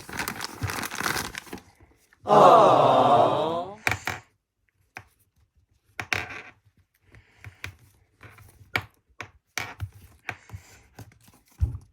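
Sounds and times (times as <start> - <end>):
plastic and cardboard rustling: 0.0 - 2.2, 9.4 - 11.9.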